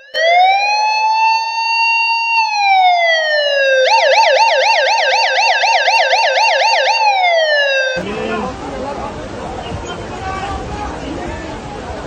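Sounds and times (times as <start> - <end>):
electronic emergency siren: 0.0 - 8.0.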